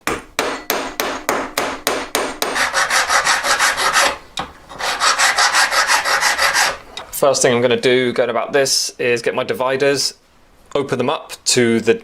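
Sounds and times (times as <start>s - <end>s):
hand tool rasping metal ring: 0.4s - 7.0s.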